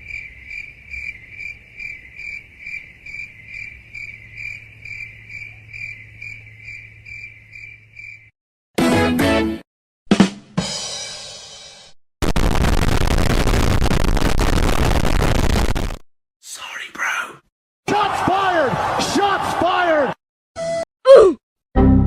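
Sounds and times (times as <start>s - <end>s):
cricket chirping: 0.0s - 8.3s.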